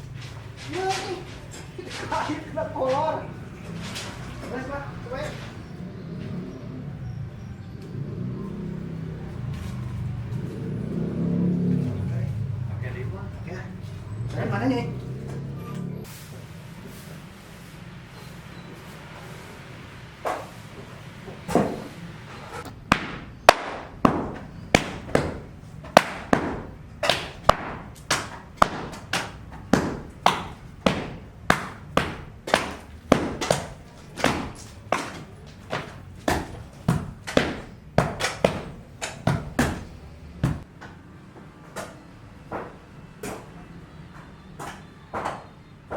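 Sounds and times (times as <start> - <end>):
hammering with ringing blows: 22.8 - 40.7.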